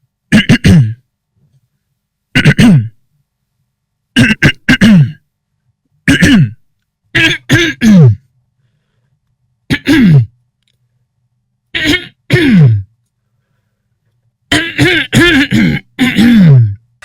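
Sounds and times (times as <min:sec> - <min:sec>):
man clearing throat and coughing: 0:00.3 - 0:01.1, 0:02.3 - 0:03.0, 0:04.2 - 0:05.3, 0:06.0 - 0:08.3, 0:09.7 - 0:10.4, 0:11.8 - 0:12.9, 0:14.5 - 0:16.8.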